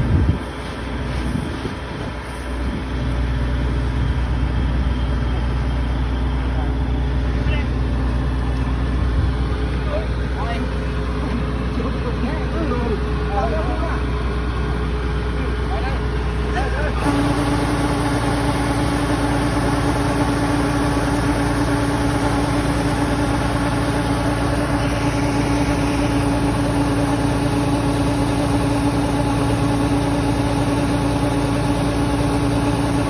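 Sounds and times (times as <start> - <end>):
engine humming steadily: 0.0 - 33.0.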